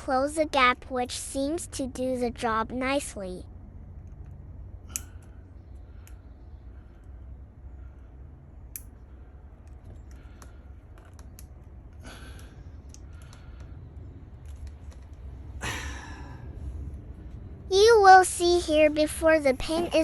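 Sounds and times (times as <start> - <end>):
steady low hum: 0.0 - 20.0
small clicks: 4.0 - 5.4, 8.7 - 15.3.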